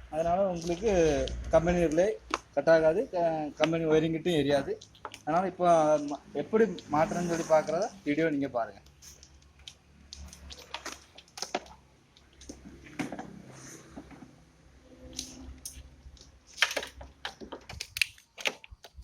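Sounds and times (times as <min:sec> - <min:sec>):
car parts clicking and tapping: 0:00.6 - 0:02.9, 0:03.6 - 0:04.0, 0:04.6 - 0:06.8, 0:08.8 - 0:14.3, 0:15.0 - 0:19.0.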